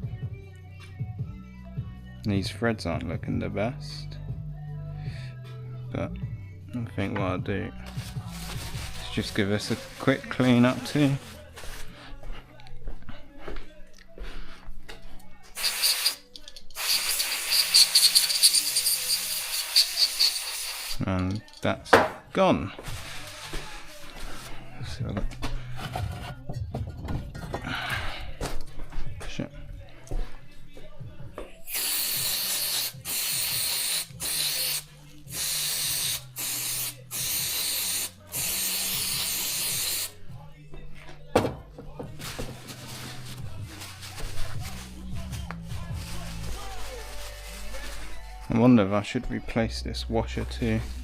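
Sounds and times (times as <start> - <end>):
aerosol spray hissing: 15.6 - 16.2, 16.8 - 21.0, 31.7 - 40.2.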